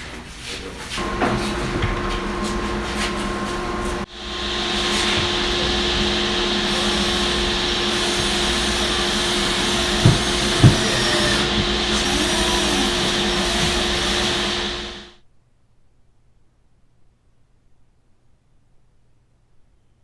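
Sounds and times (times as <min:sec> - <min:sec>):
electric tool whining: 0:01.0 - 0:15.2
sharp knocks: 0:08.9 - 0:14.0.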